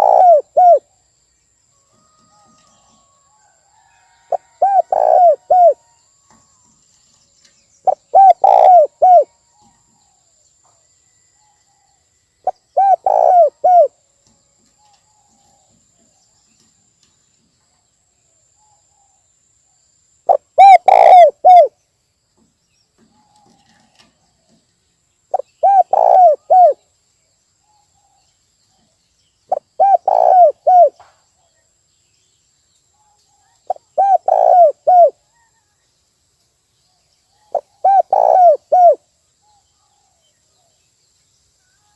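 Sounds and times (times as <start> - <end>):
dove cooing: 0.0 - 0.8, 4.3 - 5.8, 7.9 - 9.3, 12.5 - 13.9, 20.3 - 21.7, 25.3 - 26.8, 29.5 - 31.0, 33.7 - 35.2, 37.5 - 39.0.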